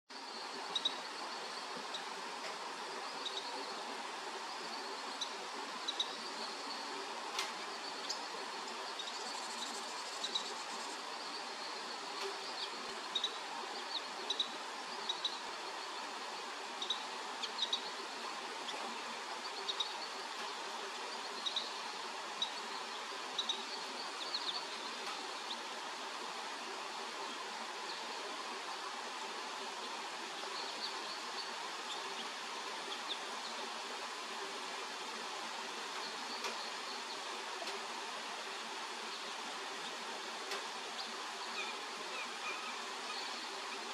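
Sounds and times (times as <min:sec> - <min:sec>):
rain falling: 0:00.1 - 0:43.9
young wren chirping: 0:00.7 - 0:02.1, 0:03.2 - 0:03.8, 0:07.8 - 0:15.5, 0:16.8 - 0:20.2, 0:22.4 - 0:25.6.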